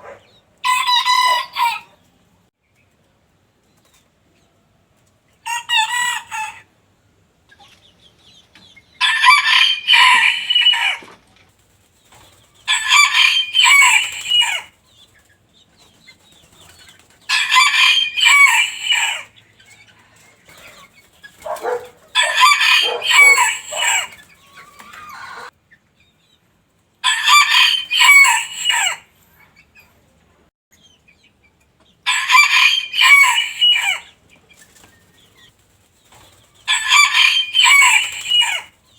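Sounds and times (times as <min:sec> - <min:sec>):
rooster crowing: 0:09.0 - 0:11.0, 0:12.7 - 0:14.7, 0:17.3 - 0:19.2, 0:21.5 - 0:24.1, 0:27.0 - 0:29.0, 0:32.1 - 0:34.0, 0:36.7 - 0:38.7.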